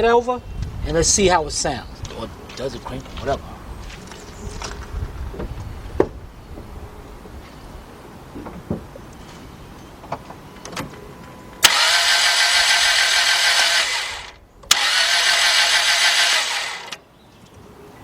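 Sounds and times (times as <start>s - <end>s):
engine cranking on starter: 11.6s - 17.0s.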